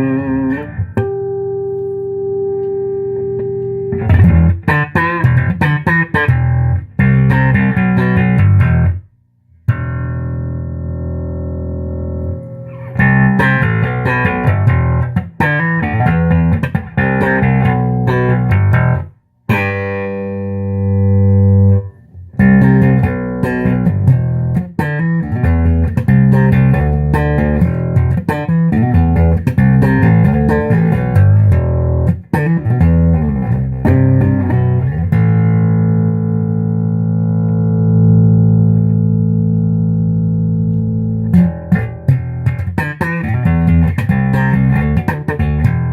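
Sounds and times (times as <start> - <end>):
bass guitar plucked notes: 0.0 - 45.9.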